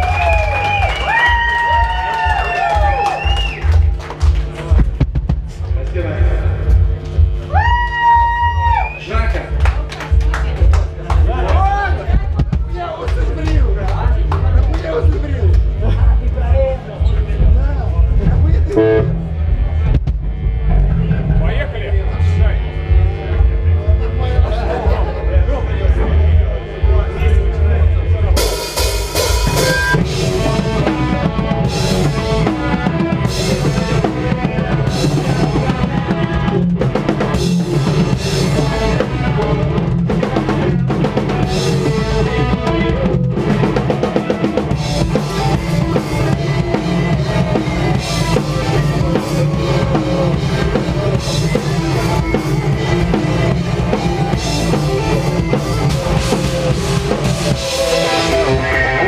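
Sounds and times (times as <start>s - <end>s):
bass drum and snare: 0.0s - 25.1s, 28.2s - 58.7s
loud live rock band: 18.0s - 25.3s, 27.9s - 59.0s.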